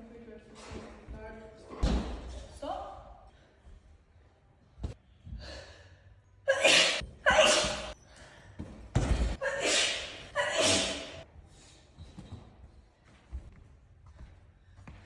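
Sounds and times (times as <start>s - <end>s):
person sneezing: 6.5s - 8.0s, 9.4s - 11.2s.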